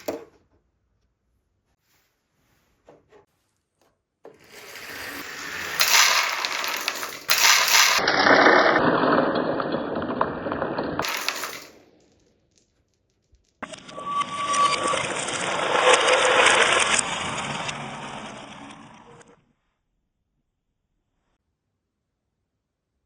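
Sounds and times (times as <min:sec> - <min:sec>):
marbles rattling down wooden track: 0:04.4 - 0:13.6.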